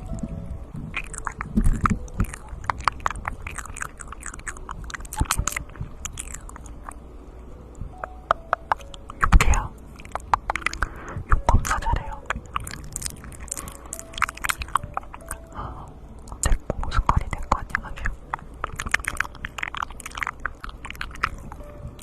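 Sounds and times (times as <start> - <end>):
soft low thumps: 0.0 - 2.8
wet lip and tongue clicks: 0.9 - 7.0, 8.0 - 15.5, 16.2 - 21.8.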